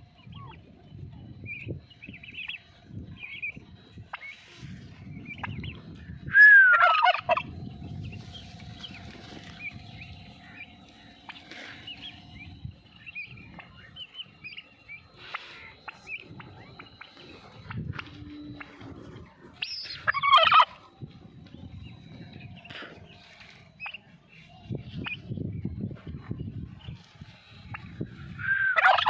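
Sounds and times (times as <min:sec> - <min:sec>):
turkeys calling: 0:00.0 - 0:29.0
turkey gobble: 0:00.2 - 0:00.7, 0:02.2 - 0:02.6, 0:03.2 - 0:04.5, 0:05.2 - 0:07.5, 0:08.1 - 0:20.9, 0:22.6 - 0:24.1, 0:25.0 - 0:25.2, 0:27.7 - 0:29.0.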